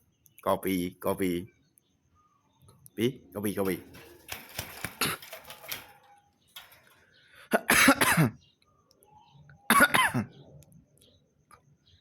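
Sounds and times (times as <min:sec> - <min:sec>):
person coughing: 0:07.5 - 0:08.4, 0:09.7 - 0:10.3.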